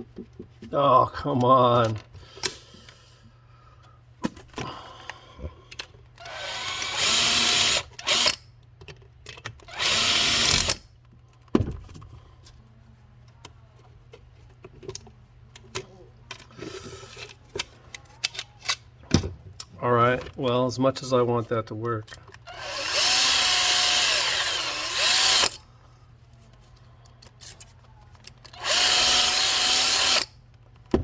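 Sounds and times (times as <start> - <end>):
power drill whining: 6.2 - 8.4, 9.7 - 10.8, 22.5 - 25.6, 28.6 - 30.3.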